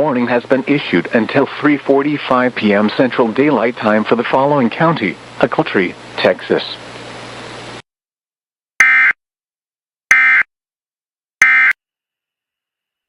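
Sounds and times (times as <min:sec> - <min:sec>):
broadcast hiss: 0:00.0 - 0:07.8.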